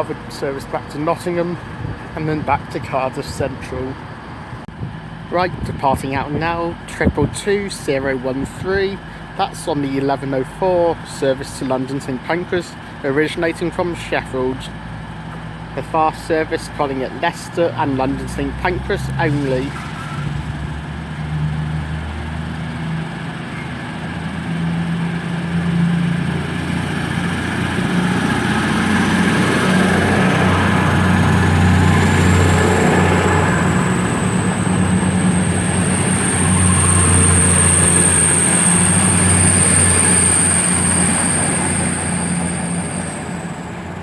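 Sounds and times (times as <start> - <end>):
diesel train engines pulling away: 0.0 - 44.0
high whine rising in pitch: 18.2 - 44.0.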